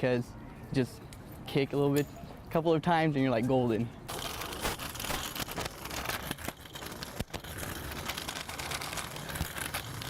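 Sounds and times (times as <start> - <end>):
scooter wheels rolling on pavement: 3.4 - 10.0.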